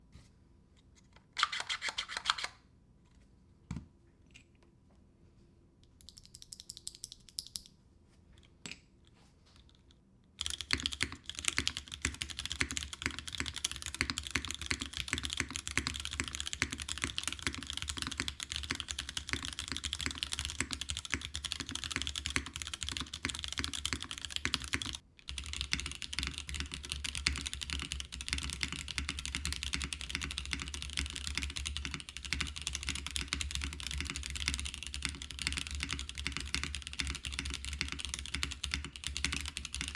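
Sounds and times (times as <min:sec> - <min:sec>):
mechanical keyboard typing: 0:01.4 - 0:02.5, 0:10.4 - 0:39.9.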